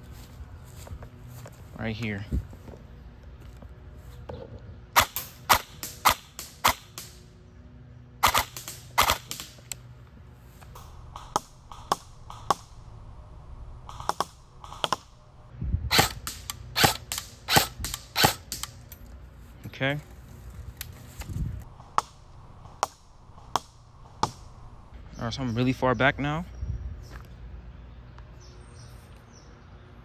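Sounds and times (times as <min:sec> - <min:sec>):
airsoft rifle shots: 0:05.0 - 0:07.2, 0:08.2 - 0:09.7, 0:11.1 - 0:12.8, 0:15.9 - 0:18.8.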